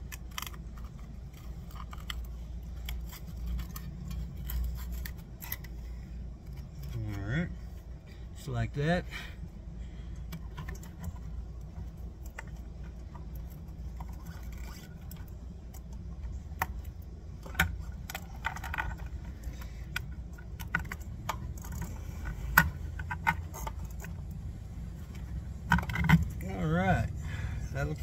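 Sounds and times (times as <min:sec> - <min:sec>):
small metal parts clinking: 0:00.0 - 0:07.4
low steady hum: 0:00.0 - 0:28.0.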